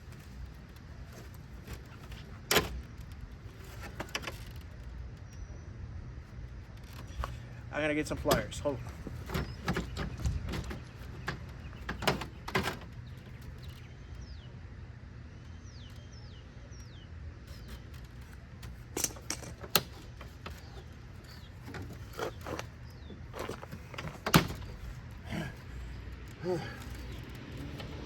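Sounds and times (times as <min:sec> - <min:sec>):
birds chirping: 0:00.0 - 0:28.0
clicks and knocks of tools: 0:17.5 - 0:25.0.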